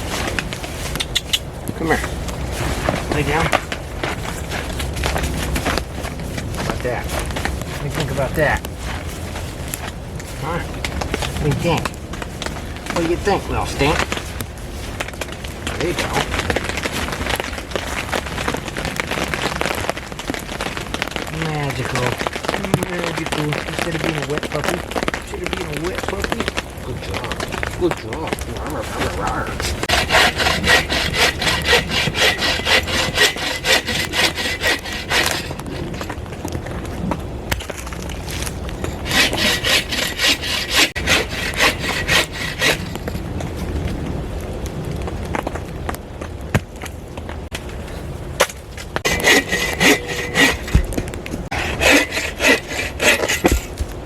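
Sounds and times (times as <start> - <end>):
hand saw cutting wood: 29.6 - 36.1, 39.0 - 43.0, 49.0 - 53.9
knocks and rustles: 45.0 - 54.0.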